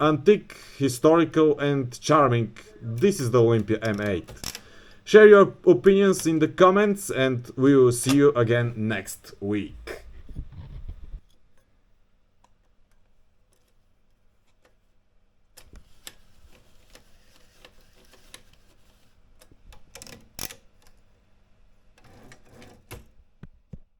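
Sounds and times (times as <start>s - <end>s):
manual typewriter typing: 3.0s - 4.7s.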